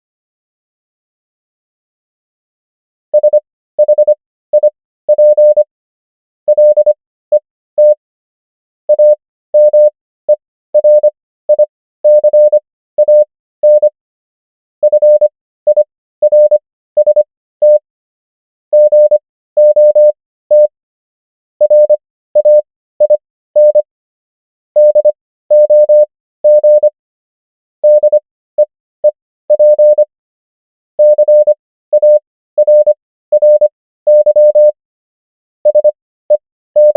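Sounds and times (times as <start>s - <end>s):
morse code beeps: 3.2s - 5.7s, 6.5s - 7.0s, 7.8s - 8.0s, 8.9s - 14.0s, 14.8s - 17.8s, 18.8s - 20.7s, 21.6s - 23.9s, 24.8s - 26.9s, 27.8s - 28.2s, 29.0s - 30.1s, 31.0s - 34.8s, 35.6s - 36.9s.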